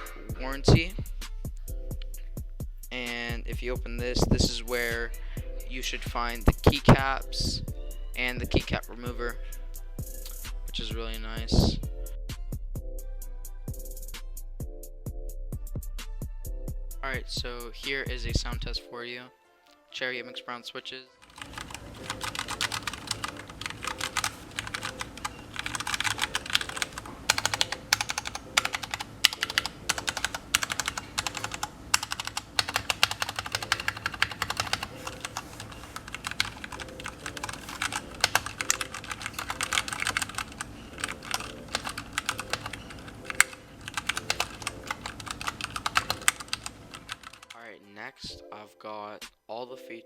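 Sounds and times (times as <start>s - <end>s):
mechanical keyboard typing: 21.2s - 47.6s.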